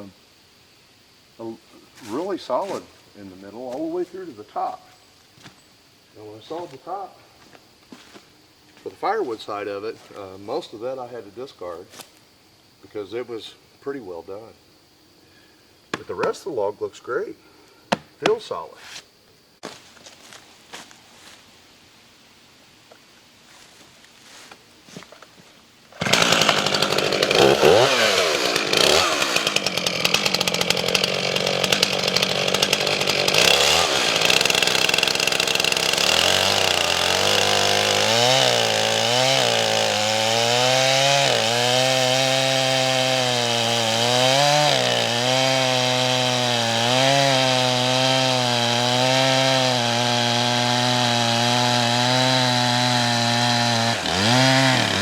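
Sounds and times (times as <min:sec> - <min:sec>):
chainsaw revving and cutting log: 0:26.0 - 0:55.0.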